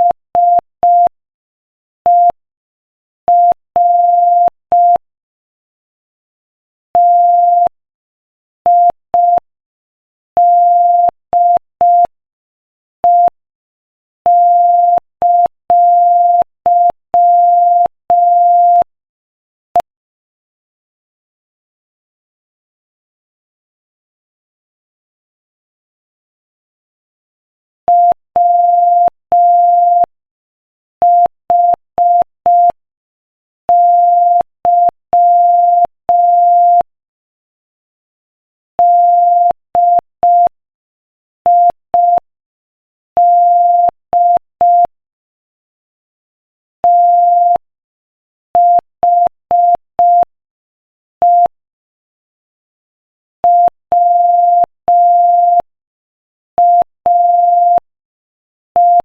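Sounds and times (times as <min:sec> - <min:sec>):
morse code beeps: 0:13.1 - 0:13.3, 0:14.3 - 0:18.9, 0:27.9 - 0:30.1, 0:31.0 - 0:32.8, 0:33.7 - 0:36.9, 0:38.8 - 0:40.6, 0:41.5 - 0:42.3, 0:43.2 - 0:44.9, 0:46.8 - 0:47.6, 0:48.6 - 0:50.3, 0:51.2 - 0:51.6, 0:53.4 - 0:55.7, 0:56.6 - 0:57.8, 0:58.8 - 0:59.0.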